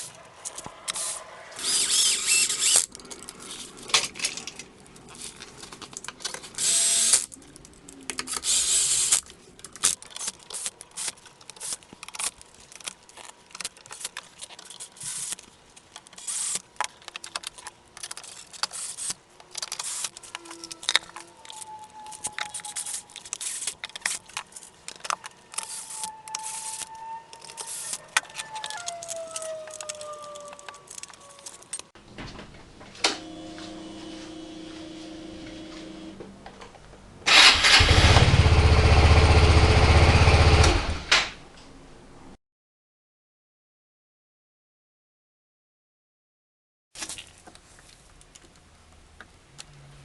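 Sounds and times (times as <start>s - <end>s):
hand tools and metal parts clinking: 0.0s - 32.0s.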